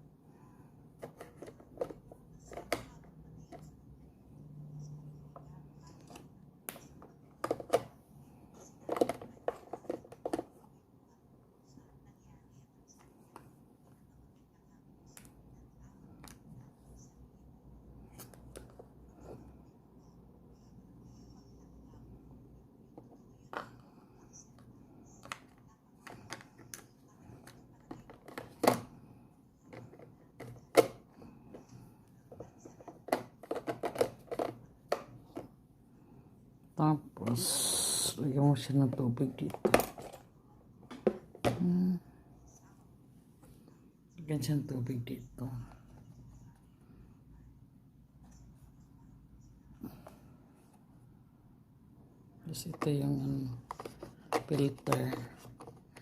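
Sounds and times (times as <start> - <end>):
faint low hum: 0.0 - 56.0
plastic parts clicking and knocking: 1.0 - 3.7, 6.0 - 7.9, 8.6 - 10.6, 25.2 - 29.0, 29.7 - 31.7, 32.4 - 35.5, 52.6 - 56.0.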